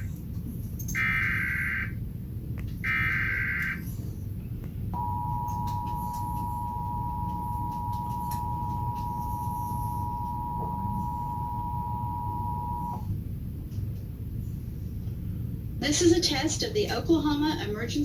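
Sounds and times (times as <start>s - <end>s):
two-tone attention signal: 5.0s - 13.0s.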